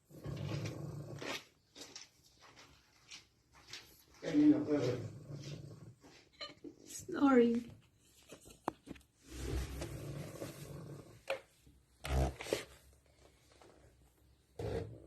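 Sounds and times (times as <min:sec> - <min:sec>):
dog snoring: 0:00.0 - 0:01.5, 0:04.6 - 0:06.0.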